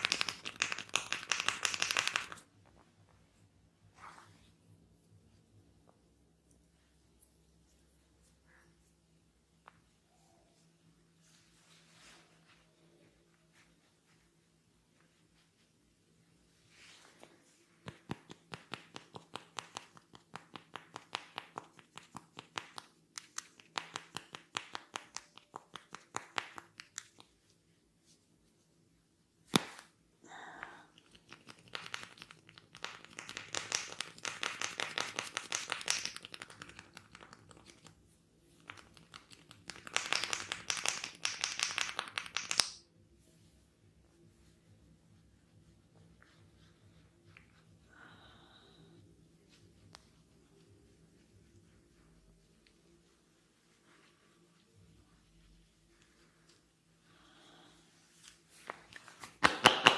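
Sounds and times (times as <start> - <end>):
hair crackling and rustling: 0.0 - 3.1, 16.7 - 28.6, 30.9 - 42.9, 58.0 - 59.9.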